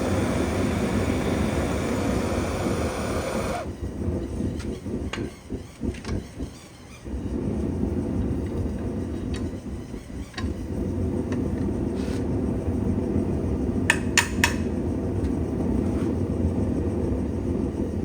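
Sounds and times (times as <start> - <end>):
steady low rumble: 7.1 - 13.9, 14.6 - 18.0.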